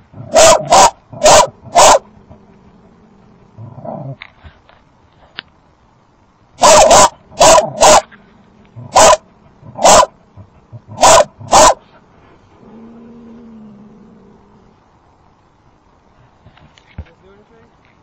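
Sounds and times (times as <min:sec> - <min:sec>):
dog barking sharply: 0:00.3 - 0:02.0, 0:06.6 - 0:08.1, 0:08.9 - 0:09.2, 0:09.8 - 0:10.1, 0:11.0 - 0:11.8.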